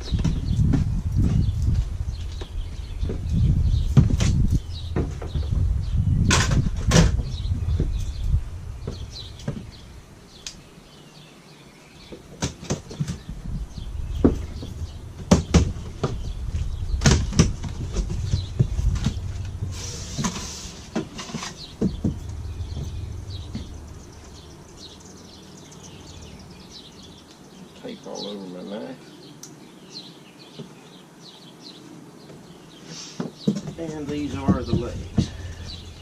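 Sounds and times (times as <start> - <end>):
cardboard knocking and scraping: 14.2 - 23.7, 33.3 - 35.5.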